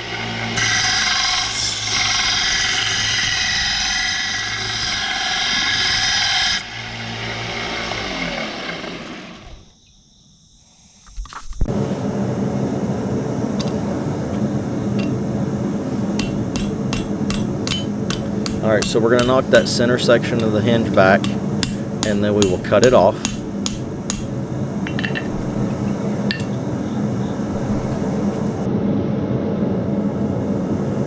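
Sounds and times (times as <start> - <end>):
power tool cutting steel: 0.0 - 9.6, 16.2 - 28.6
low machine hum: 11.7 - 28.7.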